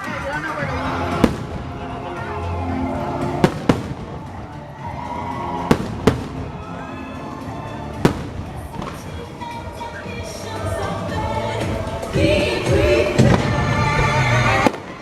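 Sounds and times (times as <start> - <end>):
fireworks show music: 0.0 - 15.0
fireworks bursting with bangs: 1.0 - 2.3, 3.2 - 4.7, 5.4 - 6.7, 7.9 - 9.9, 11.7 - 15.0.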